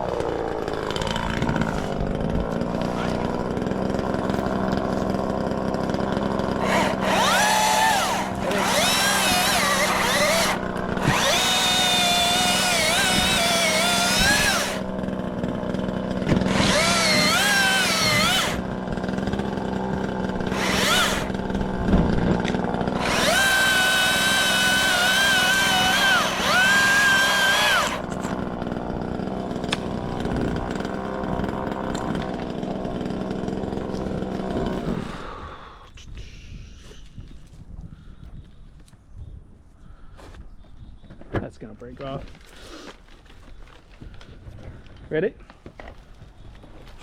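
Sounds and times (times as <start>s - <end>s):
chainsaw cutting wood: 0.0s - 35.8s.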